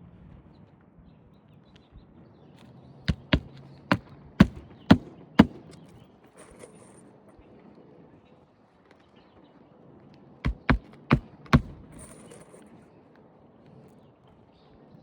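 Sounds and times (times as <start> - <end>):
hammer striking roofing nail: 3.1 - 5.9, 10.5 - 12.2.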